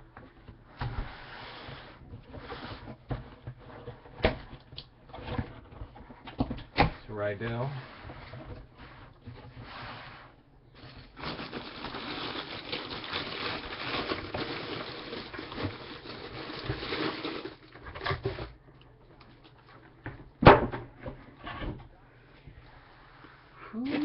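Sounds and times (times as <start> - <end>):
packaging crinkling and rustling: 10.8 - 18.6.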